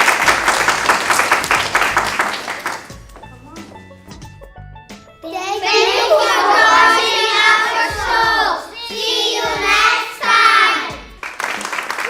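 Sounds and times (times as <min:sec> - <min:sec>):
music: 0:00.0 - 0:12.0
children singing: 0:05.4 - 0:11.2.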